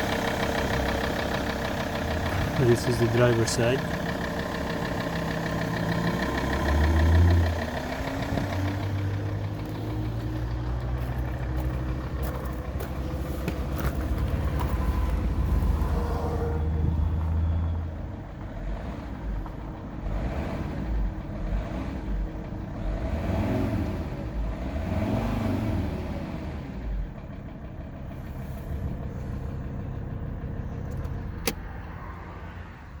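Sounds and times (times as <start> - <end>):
diesel engine knocking: 0.0 - 32.0
sharp click: 30.9 - 31.6.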